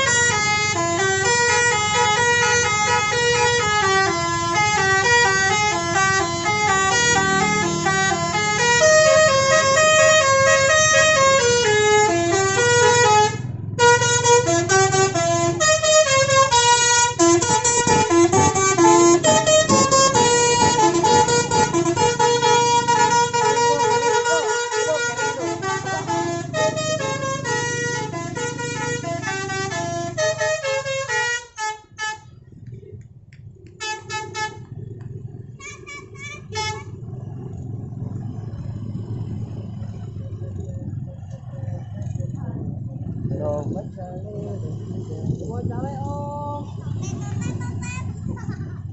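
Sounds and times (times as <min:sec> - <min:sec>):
bus horn playing melody: 0:00.0 - 0:32.4, 0:33.8 - 0:34.8, 0:35.5 - 0:37.1.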